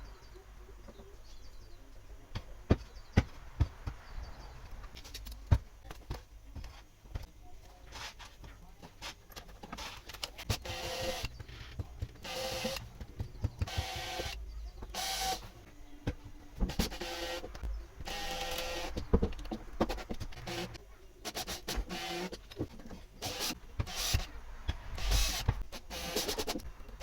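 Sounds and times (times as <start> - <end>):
small electric motor whirring: 10.6 - 11.3, 12.2 - 12.8, 13.7 - 14.4, 15.0 - 15.4, 16.7 - 19.0, 23.2 - 24.3, 25.0 - 26.6.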